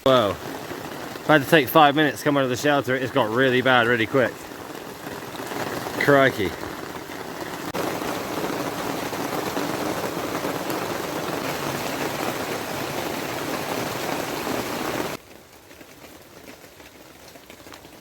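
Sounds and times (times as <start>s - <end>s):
heavy rain pouring: 0.0s - 18.0s.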